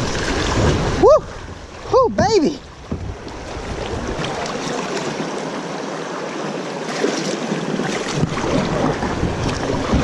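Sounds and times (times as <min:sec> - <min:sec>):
river water rushing: 0:00.0 - 0:10.0
wind buffeting microphone: 0:07.8 - 0:10.0.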